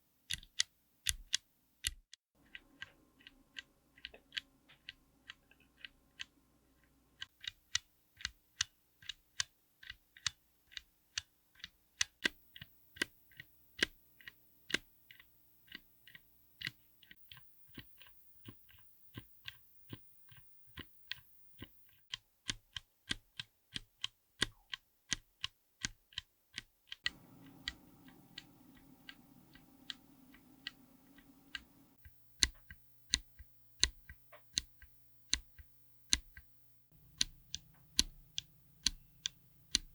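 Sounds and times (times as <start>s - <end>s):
background hum: 27.1s - 39.9s.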